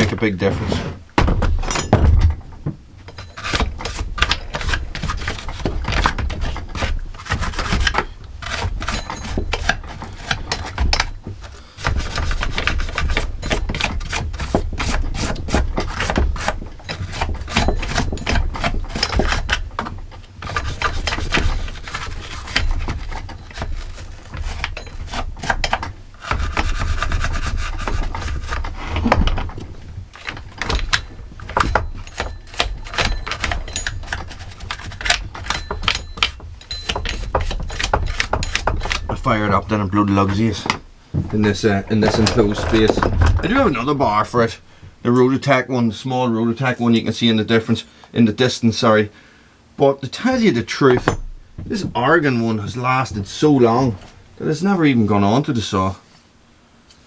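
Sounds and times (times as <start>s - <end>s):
metal scraping and clicking: 0.0s - 45.3s.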